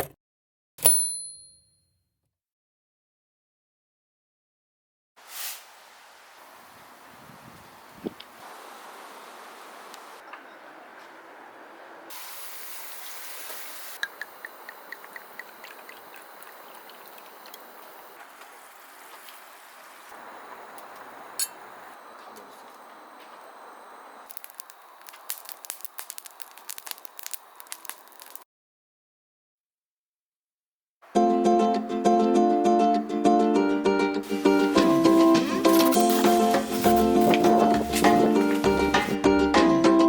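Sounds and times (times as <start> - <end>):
steady hiss: 5.2 - 10.2, 12.1 - 28.4, 34.2 - 39.3
dense sharp crackling: 19.8 - 28.4, 34.2 - 39.2
evenly spaced clicks: 24.2 - 28.4.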